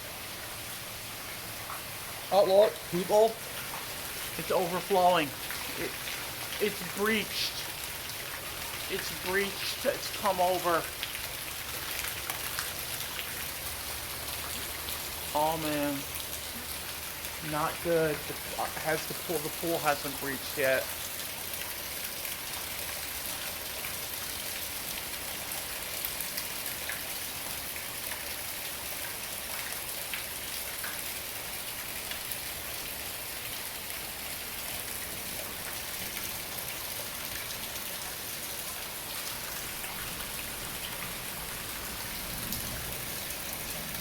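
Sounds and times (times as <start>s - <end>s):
heavy rain falling: 0.0s - 22.4s, 31.6s - 44.0s
rain spattering on water: 0.0s - 44.0s
water dripping: 0.3s - 44.0s.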